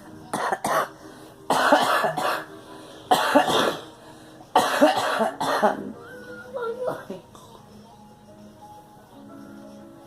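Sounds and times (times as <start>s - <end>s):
girl coughing: 1.5s - 2.5s, 3.1s - 3.9s, 4.6s - 6.0s.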